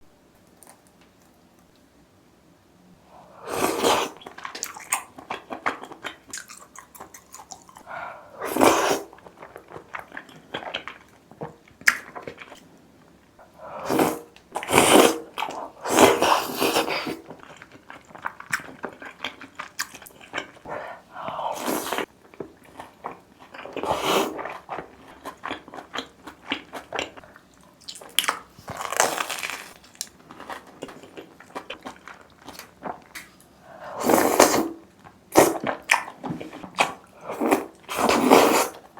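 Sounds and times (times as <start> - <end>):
chewing sounds: 3.6 - 12.7, 13.8 - 33.4
loud bites and crunches: 28.2 - 30.1.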